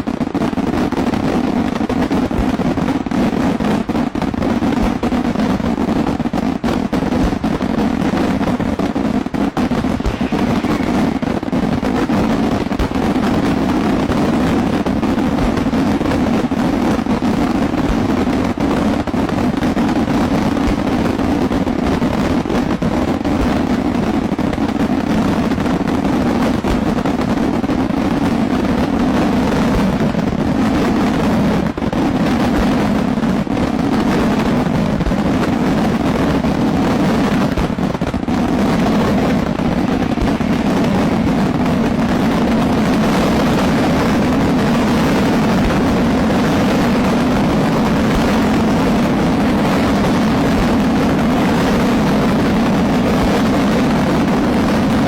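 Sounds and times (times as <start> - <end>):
fireworks crackling and banging: 0.0 - 55.0.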